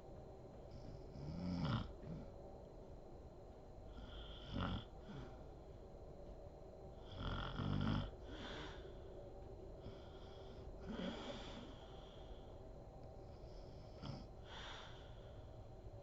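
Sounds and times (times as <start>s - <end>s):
woman snoring: 1.1s - 1.9s, 4.0s - 5.3s, 7.0s - 8.8s, 9.9s - 11.7s, 13.6s - 15.0s.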